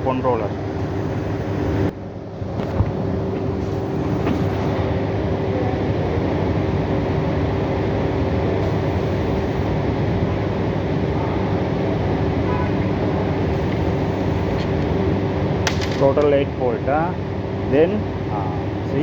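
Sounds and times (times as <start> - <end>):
mechanical drone: 2.6 - 17.1.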